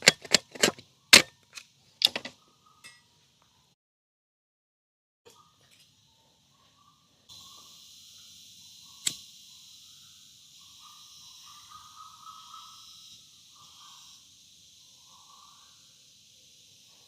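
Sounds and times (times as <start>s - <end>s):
sharp click: 0.0s - 2.3s, 9.0s - 9.3s
faint wavering calls: 5.3s - 17.0s
insects droning: 5.4s - 17.0s.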